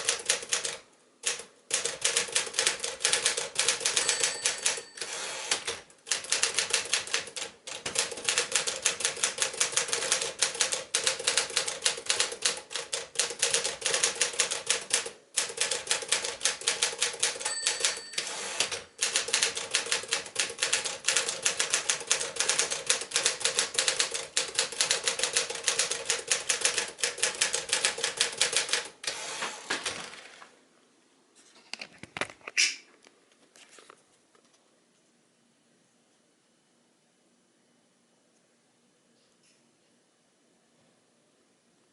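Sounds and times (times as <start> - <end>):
typewriter keystrokes: 0.0 - 29.2
typewriter clack: 0.0 - 30.4
typewriter bell ring: 3.0 - 6.7, 16.6 - 20.0.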